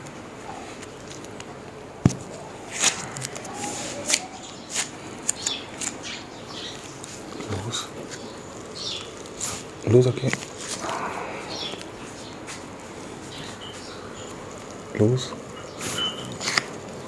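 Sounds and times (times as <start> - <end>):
hands rubbing on clothing: 2.7 - 5.0
joint popping crack: 16.3 - 17.0.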